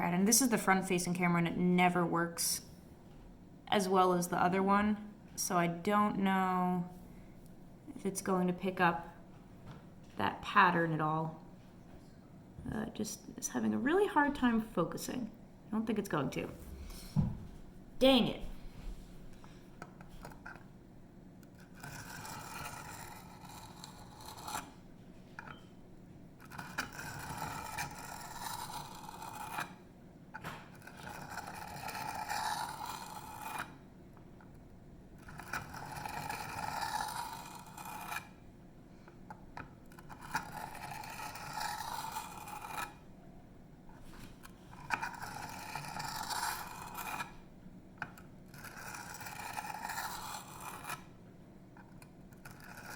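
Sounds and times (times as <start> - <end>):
knife scraping on sharpening stone: 21.7 - 24.7, 26.4 - 29.7, 30.8 - 33.7, 35.2 - 38.3, 39.9 - 43.0, 44.8 - 47.3, 48.5 - 51.0.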